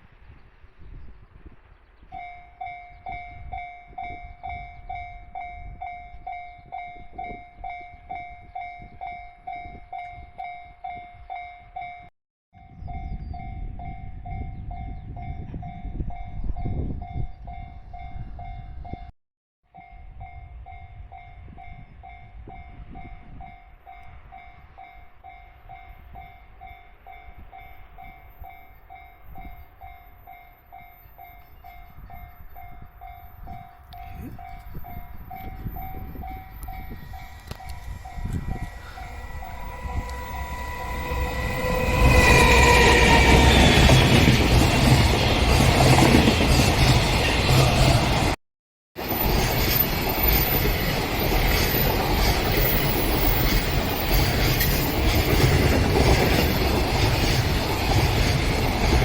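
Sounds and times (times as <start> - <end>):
level crossing warning bell: 19.8 - 45.1
train rumbling over rails: 19.8 - 48.4, 49.0 - 59.0.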